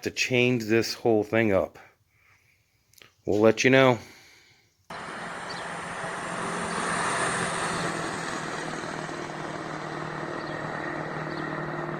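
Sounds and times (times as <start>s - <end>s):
vehicle engine running: 4.9s - 11.9s.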